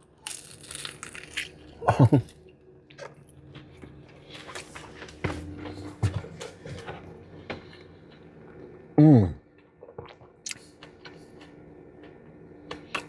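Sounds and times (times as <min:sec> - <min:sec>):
crunchy chewing: 0:00.0 - 0:06.9.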